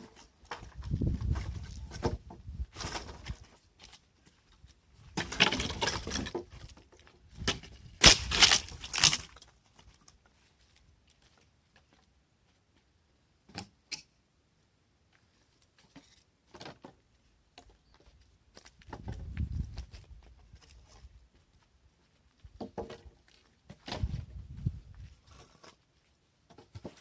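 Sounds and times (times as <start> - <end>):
dry sticks rustling and crackling: 5.2 - 11.4.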